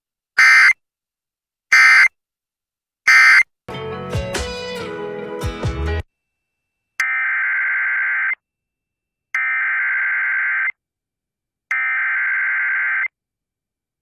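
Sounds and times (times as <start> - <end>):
screechy digital data tones: 3.1 - 3.4, 7.0 - 8.4, 9.4 - 10.8, 11.7 - 13.1.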